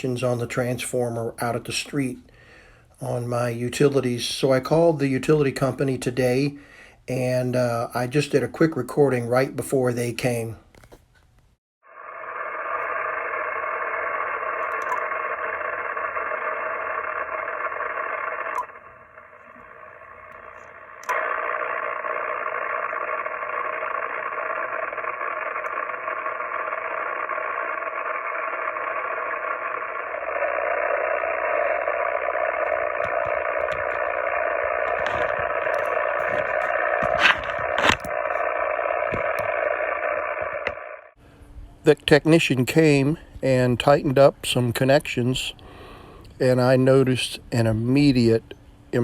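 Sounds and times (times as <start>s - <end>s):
radio static: 12.0s - 41.1s.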